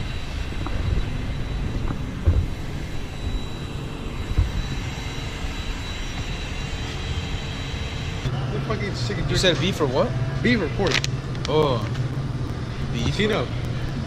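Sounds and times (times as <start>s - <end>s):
low thumps: 0.0s - 8.3s
car engine rumbling: 0.0s - 14.0s.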